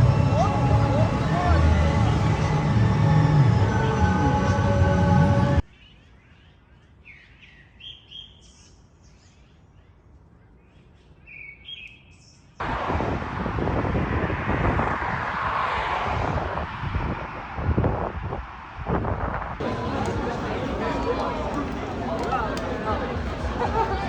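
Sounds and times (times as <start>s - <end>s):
loud steady rushing noise: 0.0s - 5.6s, 12.6s - 24.0s.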